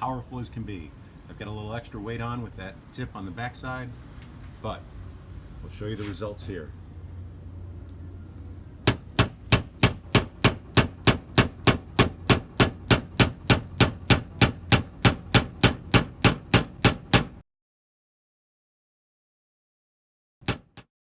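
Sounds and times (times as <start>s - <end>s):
hammer tapping car body panel: 8.8s - 17.4s, 20.4s - 20.9s.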